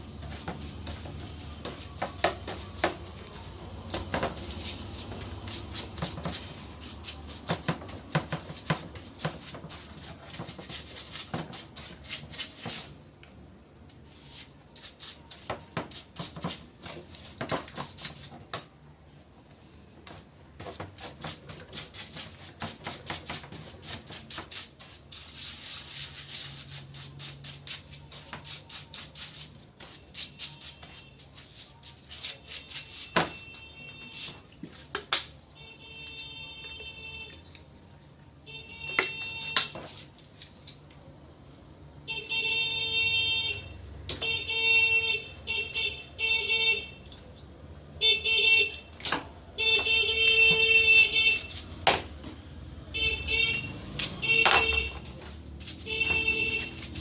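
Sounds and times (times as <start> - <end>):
metal parts and tools clattering: 49.0 - 49.3.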